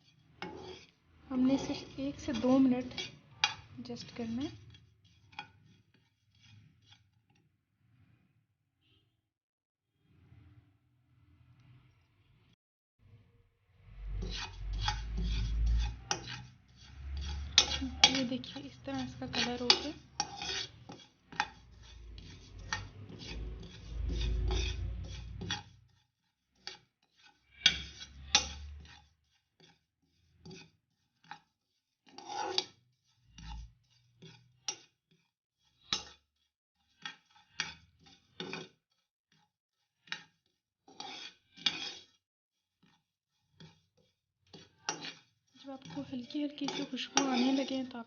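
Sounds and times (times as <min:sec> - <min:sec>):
utensil scraping seeds in pan: 0:00.0 - 0:07.4, 0:13.8 - 0:42.2, 0:42.8 - 0:48.0.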